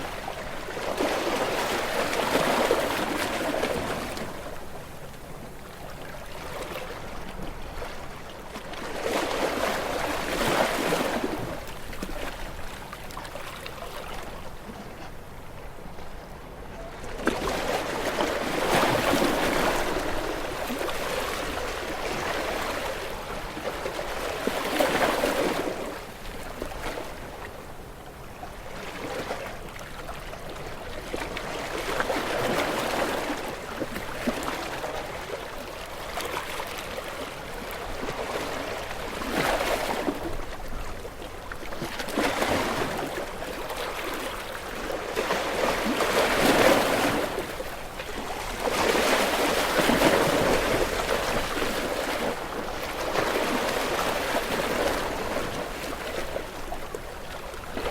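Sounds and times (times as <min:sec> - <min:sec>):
waves breaking on rocks: 0:31.3 - 0:57.9.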